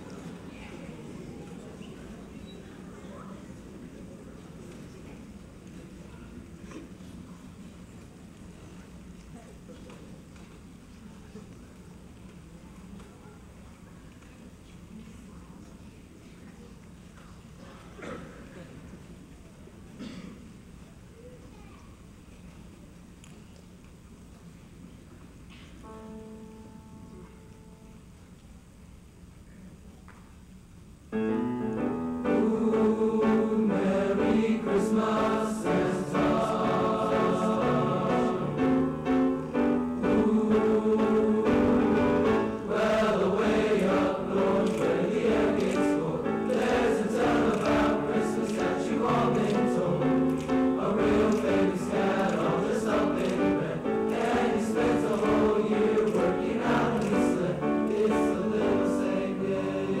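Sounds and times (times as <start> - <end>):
choir singing in parts: 31.8 - 60.0.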